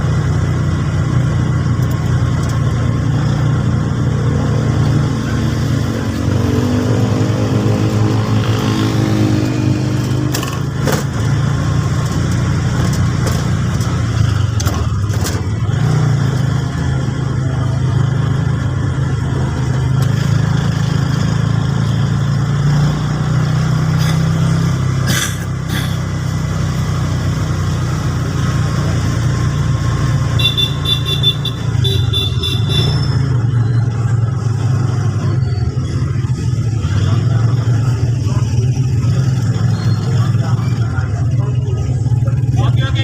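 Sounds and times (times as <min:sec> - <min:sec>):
vehicle engine droning: 0:00.0 - 0:43.0.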